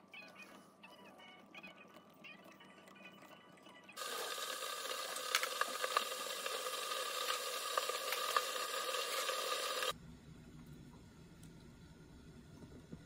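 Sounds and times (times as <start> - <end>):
oil popping and spitting: 4.0 - 9.9
food sizzling in a frying pan: 4.0 - 10.0.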